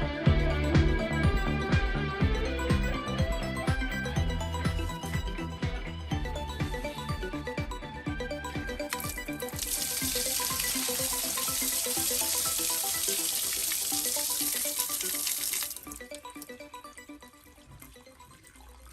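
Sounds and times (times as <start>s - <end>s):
water running hard: 8.9s - 16.0s.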